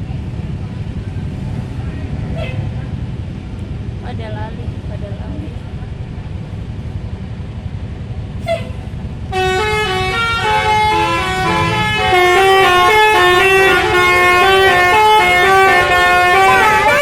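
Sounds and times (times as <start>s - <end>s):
bus engine rumble: 0.0s - 17.0s
bus horn playing melody: 2.3s - 2.8s, 8.4s - 17.0s.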